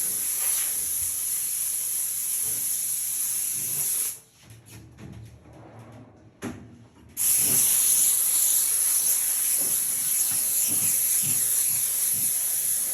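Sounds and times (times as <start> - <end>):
steam cleaner hissing: 0.0 - 4.2, 7.2 - 12.9.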